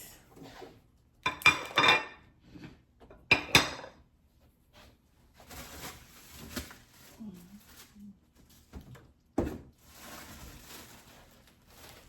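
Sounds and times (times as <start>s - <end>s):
soft rustling: 9.8s - 12.0s.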